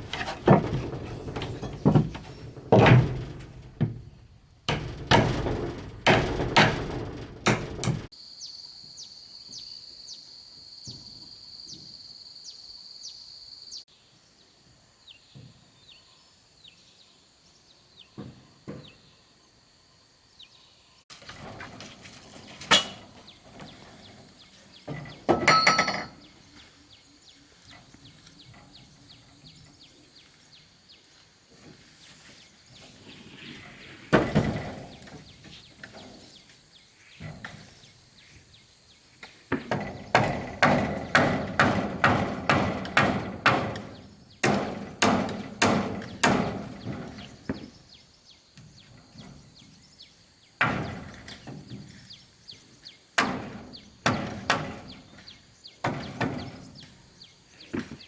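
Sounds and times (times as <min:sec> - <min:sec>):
hammering on wood: 0:00.0 - 0:08.1, 0:39.5 - 0:47.7, 0:53.2 - 0:55.2
scattered knocks: 0:00.0 - 0:08.1, 0:24.9 - 0:26.3, 0:39.5 - 0:47.7.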